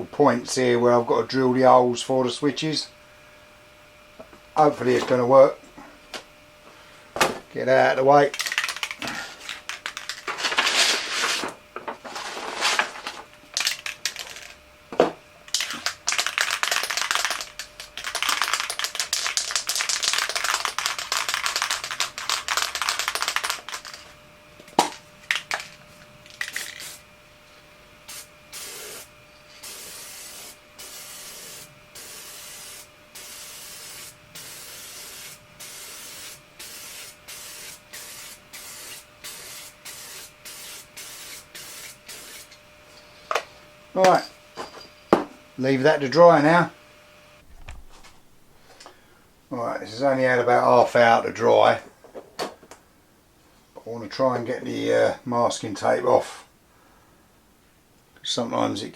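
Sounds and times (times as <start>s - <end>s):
aerosol spray can hissing: 15.6s - 24.0s, 26.4s - 27.0s, 28.1s - 42.6s.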